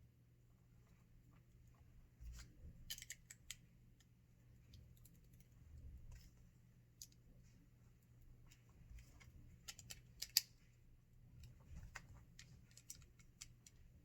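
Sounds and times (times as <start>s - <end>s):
plastic toy bricks clicking: 9.7s - 10.5s.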